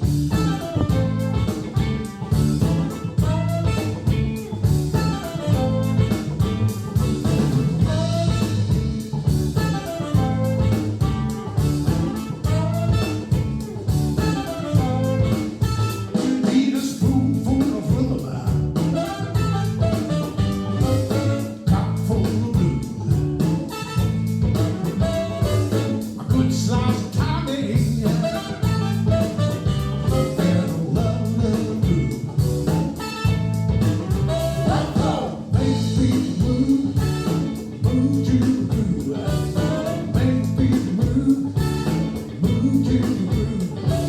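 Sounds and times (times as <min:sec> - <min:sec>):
steady bass line: 0:00.0 - 0:16.4, 0:17.0 - 0:44.0
drums: 0:00.0 - 0:44.0
guitar: 0:00.0 - 0:44.0
person singing: 0:25.7 - 0:28.6, 0:30.1 - 0:32.3, 0:34.3 - 0:44.0.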